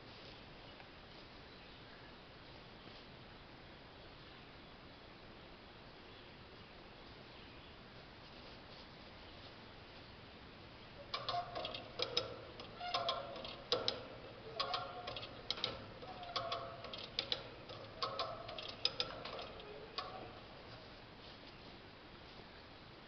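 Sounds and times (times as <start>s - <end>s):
ratchet pawl clicking: 11.1s - 20.5s.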